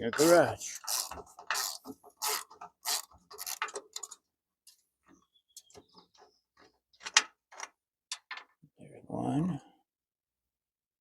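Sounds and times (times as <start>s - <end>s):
metal parts and tools clicking: 0.1s - 4.2s.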